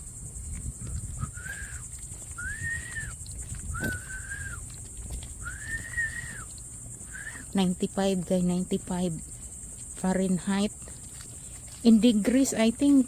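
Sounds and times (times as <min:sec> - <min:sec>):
high-pitched cricket chorus: 0:00.0 - 0:13.0
long whistled notes: 0:01.1 - 0:04.6, 0:05.4 - 0:06.5, 0:07.1 - 0:07.5.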